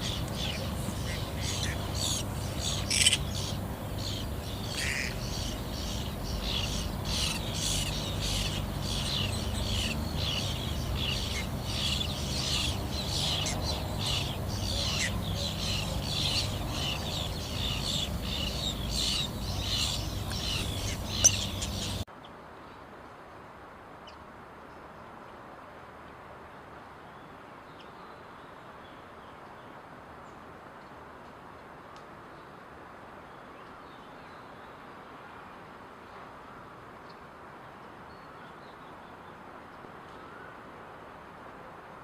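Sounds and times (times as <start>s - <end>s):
baby birds begging calls: 0.0s - 22.0s
low background hiss: 0.0s - 42.0s.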